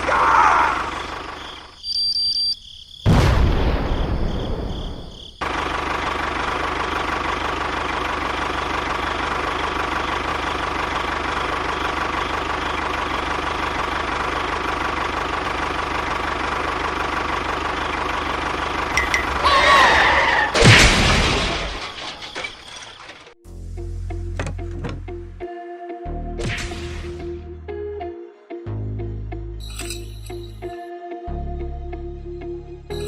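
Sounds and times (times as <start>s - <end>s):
engine running steadily: 0.0s - 1.7s, 5.4s - 20.8s
loud boom: 3.1s - 5.1s.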